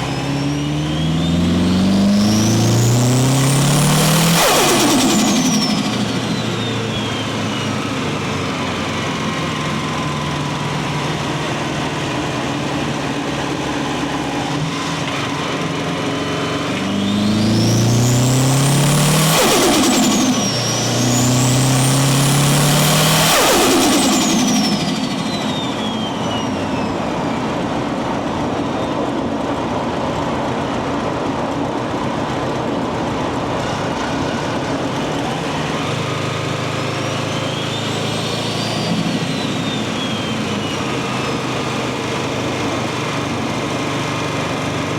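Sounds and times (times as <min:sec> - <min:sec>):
turbo whistle: 0:00.0 - 0:12.9, 0:13.6 - 0:28.0, 0:34.0 - 0:42.7
car engine accelerating: 0:00.0 - 0:44.9
turbo flutter: 0:01.7 - 0:07.8, 0:16.9 - 0:27.2.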